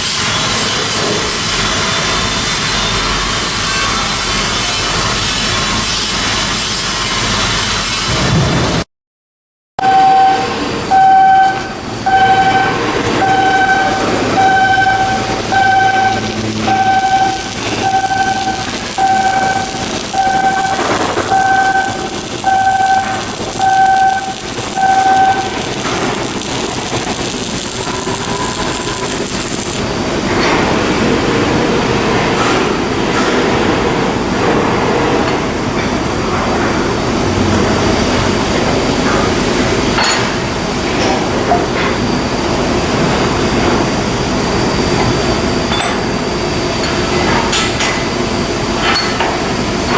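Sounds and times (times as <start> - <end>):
industrial work noise: 0.0 - 8.9, 9.8 - 49.9
electronic warning beeps: 9.8 - 30.1.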